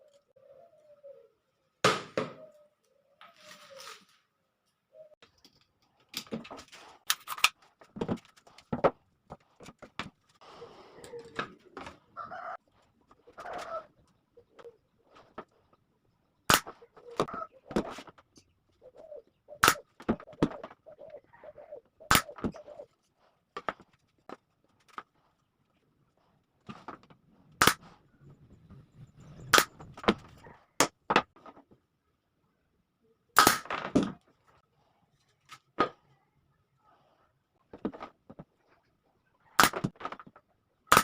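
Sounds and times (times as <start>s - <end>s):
handling and scraping noises: 2.4s - 16.0s, 16.6s - 21.3s, 22.2s - 31.9s, 33.8s - 36.2s.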